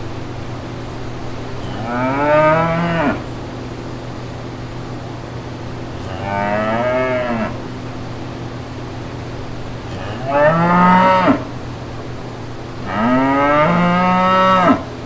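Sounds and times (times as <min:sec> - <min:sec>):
steady low hum: 0:00.0 - 0:15.0
cattle mooing: 0:01.6 - 0:03.3, 0:06.0 - 0:07.6, 0:09.8 - 0:11.6, 0:12.8 - 0:14.9.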